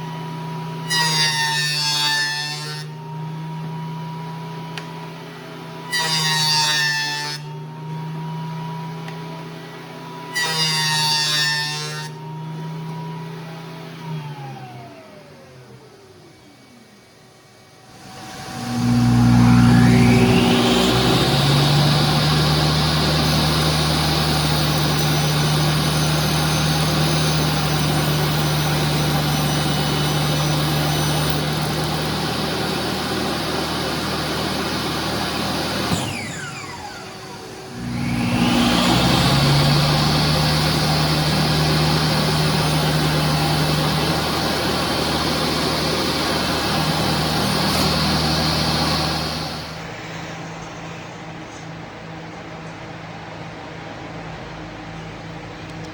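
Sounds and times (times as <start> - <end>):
power tool motor whining: 17.9 - 49.8.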